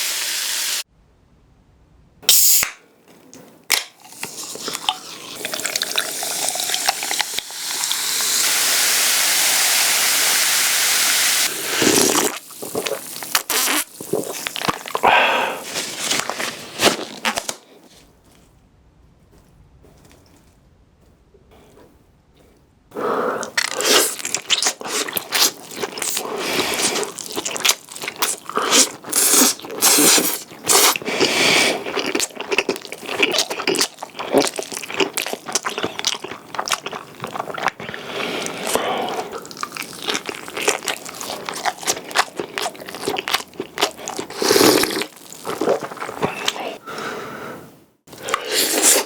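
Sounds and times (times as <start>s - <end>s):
person chewing food: 3.7s - 8.4s, 11.8s - 17.5s, 21.5s - 47.2s, 48.1s - 49.0s
mouth clicks and crackles: 11.8s - 15.1s, 23.3s - 47.1s.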